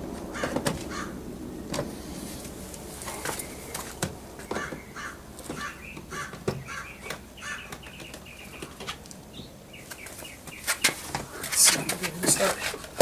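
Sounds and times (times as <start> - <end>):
crows cawing: 0.3 - 1.2, 4.4 - 8.0.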